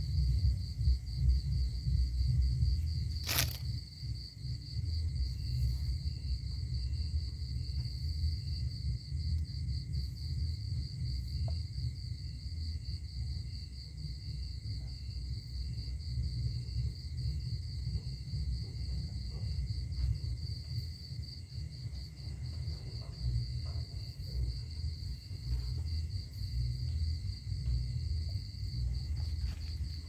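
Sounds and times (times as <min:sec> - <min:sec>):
continuous low rumble: 0:00.0 - 0:30.0
cricket chirping: 0:00.0 - 0:30.0
high pulsing insect trill: 0:00.0 - 0:30.0.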